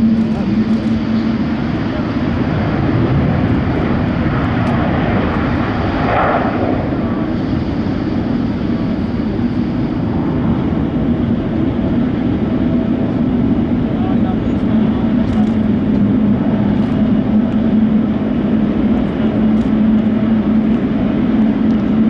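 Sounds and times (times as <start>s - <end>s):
jet engines droning: 0.0s - 22.0s.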